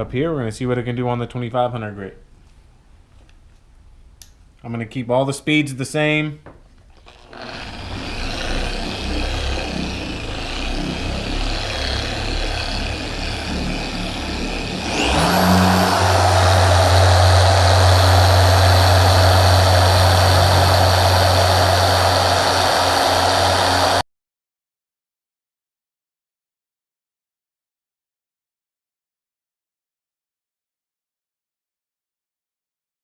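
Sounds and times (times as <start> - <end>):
electric polisher whining: 7.0 - 24.0.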